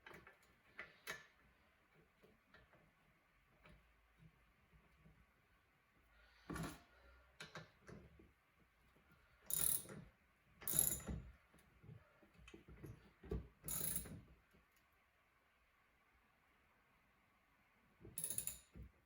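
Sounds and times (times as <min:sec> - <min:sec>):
socket ratchet clicking: 0:09.5 - 0:09.9, 0:10.7 - 0:11.1, 0:13.7 - 0:14.1, 0:18.2 - 0:18.7.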